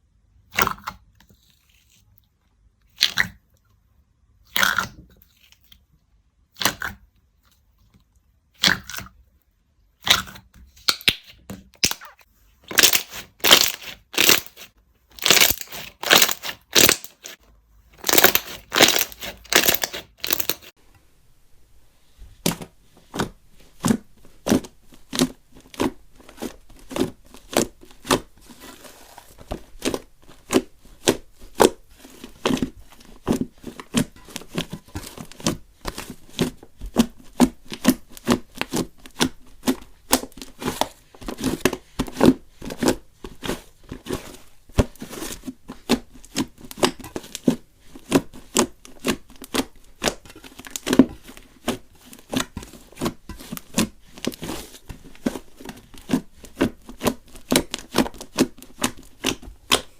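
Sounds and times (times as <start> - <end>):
slime crackling and popping: 10.0 - 17.4, 18.0 - 20.7.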